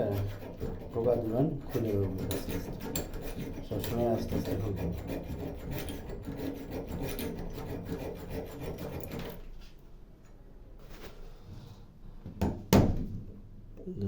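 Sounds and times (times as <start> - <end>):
hand tool scraping: 0.0 - 9.5.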